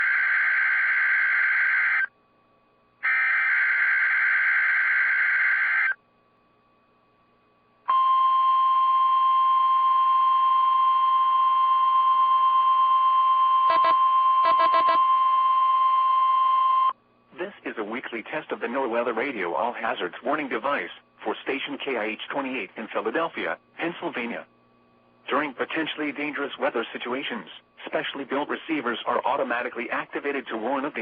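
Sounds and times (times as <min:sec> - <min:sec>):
high steady alarm tone: 0:00.0 - 0:02.1, 0:03.0 - 0:06.0, 0:07.9 - 0:17.0
buzzing digital data bursts: 0:13.7 - 0:15.0.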